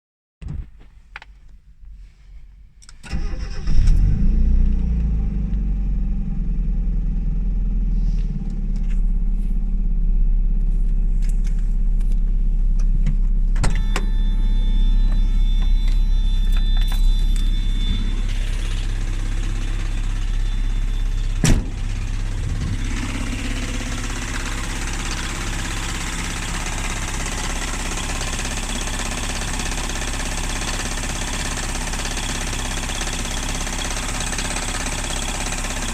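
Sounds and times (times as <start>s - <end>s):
car engine starting and idling: 0.5s - 35.9s.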